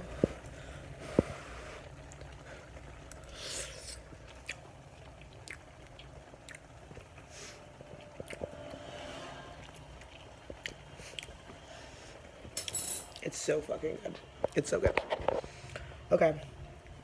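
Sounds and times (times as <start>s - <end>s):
person chewing with smacking: 1.2s - 8.5s, 9.6s - 11.7s.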